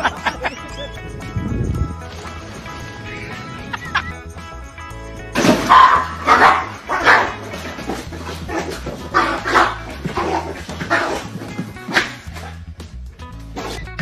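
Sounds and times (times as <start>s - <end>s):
dog barking: 5.6s - 7.4s, 8.5s - 11.3s.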